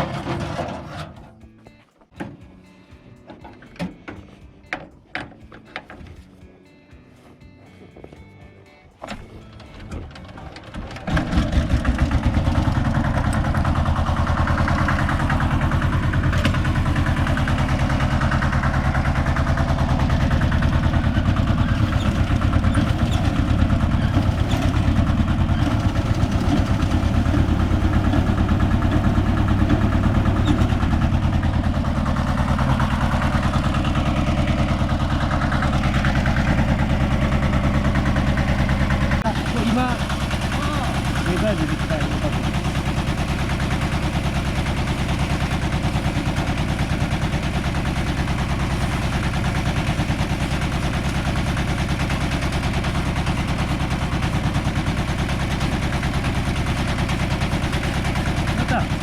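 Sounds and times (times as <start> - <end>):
thresher machine running: 0.0 - 1.4, 9.0 - 59.0.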